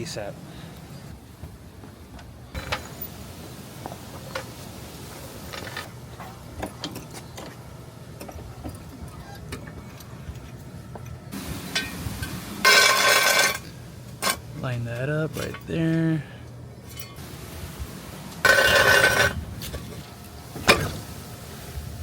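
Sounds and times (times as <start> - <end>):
loud burst of hiss: 11.3 - 13.6, 17.2 - 19.4.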